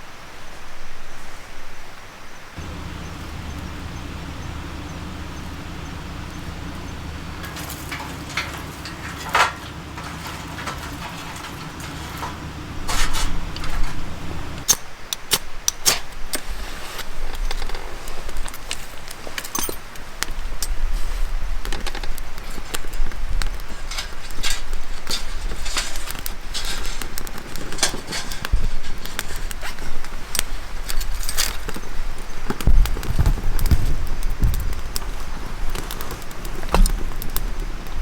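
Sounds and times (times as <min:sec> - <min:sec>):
low motor hum: 0:02.6 - 0:14.7
sharp clicks and knocks: 0:02.6 - 0:14.8.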